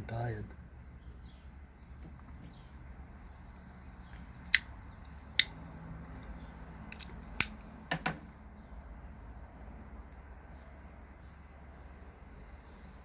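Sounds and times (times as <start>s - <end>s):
sharp clicks: 4.5s - 5.6s.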